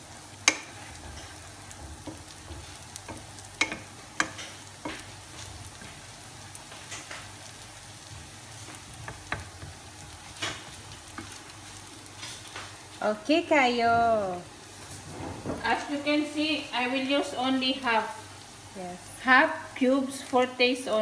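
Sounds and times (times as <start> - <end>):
garlic and onion sizzling in oil: 0.0 - 21.0.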